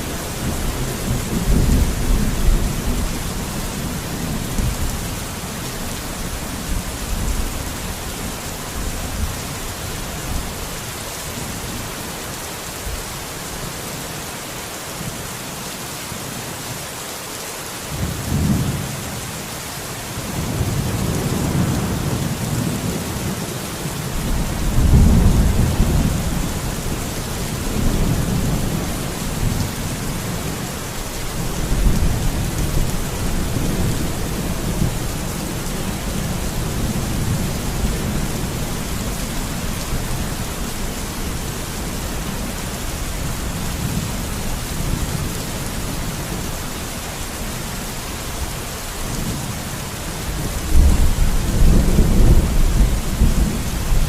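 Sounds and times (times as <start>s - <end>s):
heavy rain hissing: 0.0s - 54.0s
thunder rumbling: 24.2s - 30.6s.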